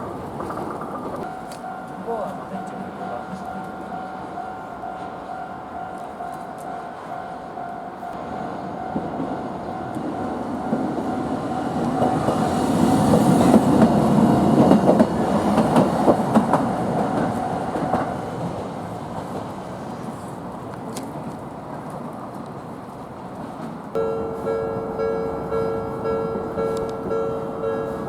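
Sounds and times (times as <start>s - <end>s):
tram wheels clacking over rail joints: 0.0s - 28.0s
crossing warning bell ringing: 0.7s - 18.6s, 24.0s - 28.0s.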